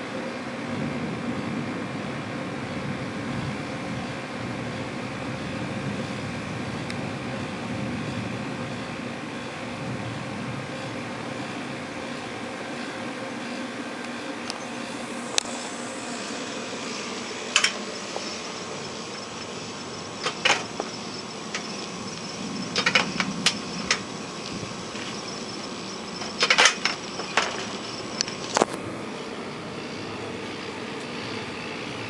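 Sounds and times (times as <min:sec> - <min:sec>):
steady background hiss: 0:08.9 - 0:31.9.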